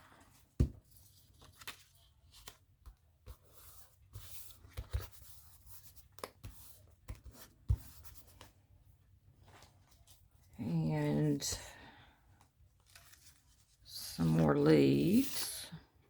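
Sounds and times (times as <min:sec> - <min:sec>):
paper rustling and rubbing: 0:12.8 - 0:14.1.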